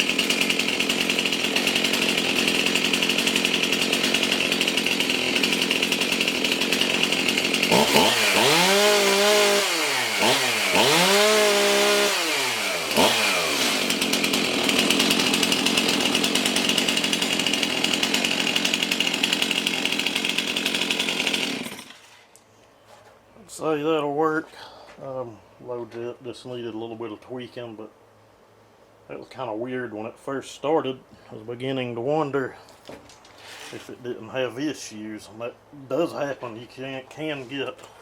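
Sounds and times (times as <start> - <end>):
chainsaw engine idling and revving: 0.0 - 22.0.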